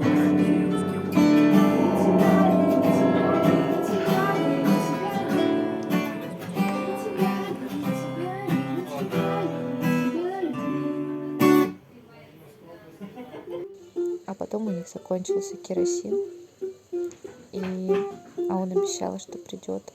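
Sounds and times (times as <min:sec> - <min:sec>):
acoustic guitar strumming: 0:00.0 - 0:11.8.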